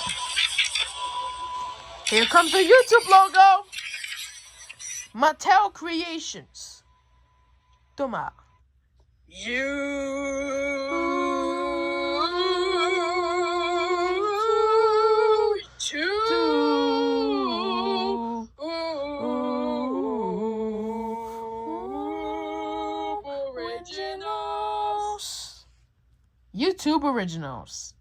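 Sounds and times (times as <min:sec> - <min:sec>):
high voice singing wordless notes: 0:09.4 - 0:25.6.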